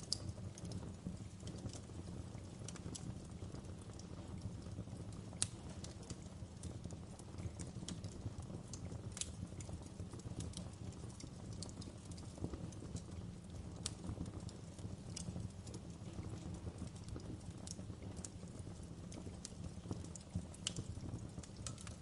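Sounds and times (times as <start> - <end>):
fire crackling: 0.0 - 22.0.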